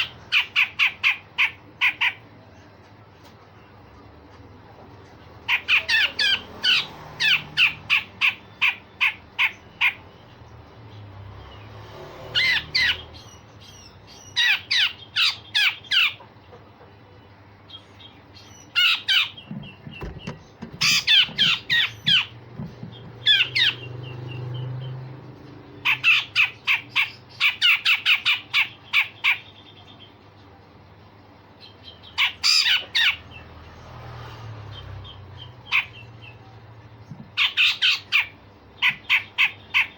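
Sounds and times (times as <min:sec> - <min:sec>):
bird giving harsh rasping calls: 0:00.0 - 0:02.2, 0:05.4 - 0:10.2, 0:12.3 - 0:16.2, 0:18.4 - 0:25.0, 0:25.7 - 0:29.5, 0:32.1 - 0:33.3, 0:35.4 - 0:36.2, 0:37.3 - 0:39.9.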